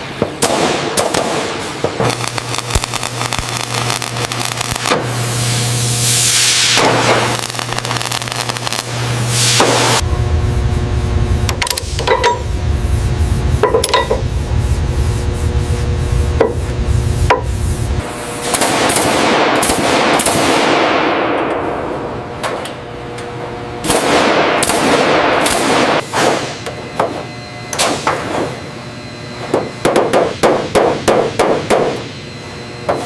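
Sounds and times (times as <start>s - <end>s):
low hum: 1.7s - 25.6s.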